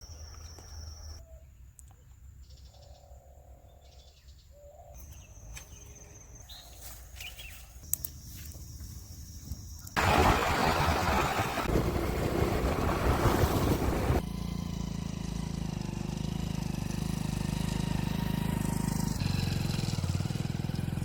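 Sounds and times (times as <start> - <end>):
loud rushing noise: 10.0 - 14.2
low steady rumble: 10.0 - 14.2.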